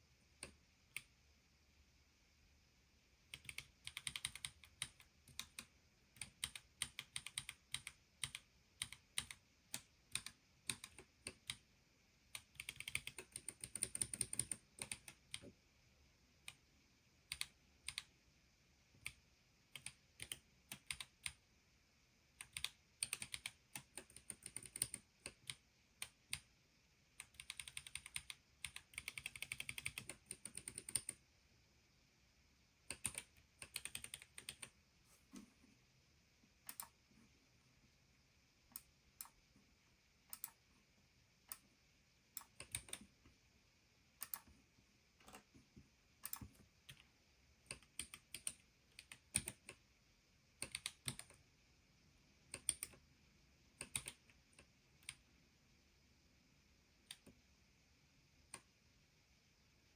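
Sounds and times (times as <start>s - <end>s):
keyboard typing: 3.3s - 11.6s, 12.4s - 15.5s, 19.8s - 21.4s, 22.4s - 26.4s, 27.2s - 31.2s, 32.9s - 34.7s, 36.7s - 37.0s, 42.4s - 43.1s, 47.7s - 49.8s, 50.6s - 51.4s, 52.6s - 53.0s, 53.8s - 55.2s.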